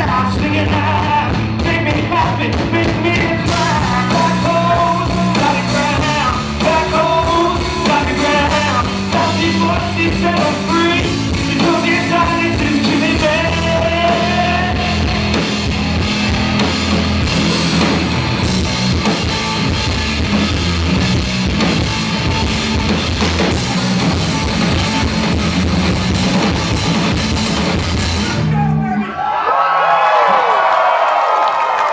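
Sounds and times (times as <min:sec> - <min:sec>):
person singing: 0:00.0 - 0:15.4
electric guitar: 0:00.0 - 0:28.8
drum kit: 0:00.0 - 0:29.0.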